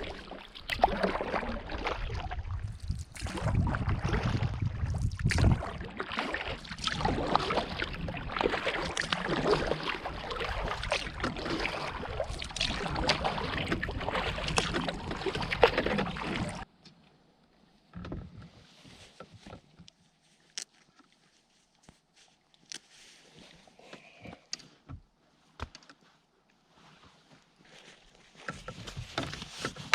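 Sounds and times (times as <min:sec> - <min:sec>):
paddle splashing in water: 0:00.0 - 0:16.7
water sloshing around boat: 0:00.0 - 0:16.7, 0:28.1 - 0:29.9.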